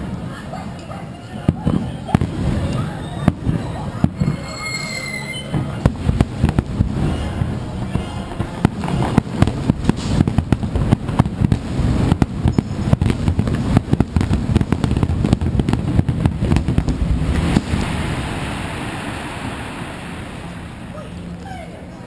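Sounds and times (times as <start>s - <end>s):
fireworks booming and crackling: 1.4s - 4.6s, 5.4s - 21.0s.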